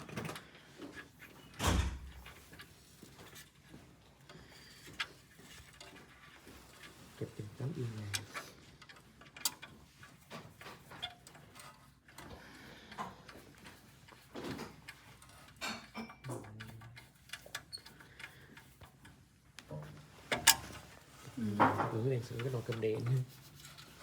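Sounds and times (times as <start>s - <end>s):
light clicks and taps of tools: 2.1s - 24.0s.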